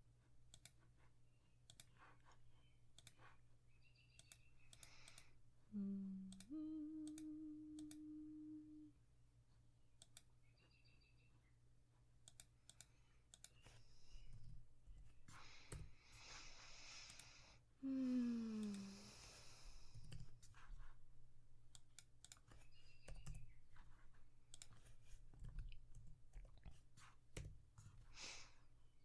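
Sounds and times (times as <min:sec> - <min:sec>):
mouse and keyboard clicks: 0:00.5 - 0:00.9, 0:01.6 - 0:03.4, 0:04.0 - 0:05.3, 0:12.2 - 0:16.0, 0:21.7 - 0:28.0
low steady tone notes: 0:05.7 - 0:09.0.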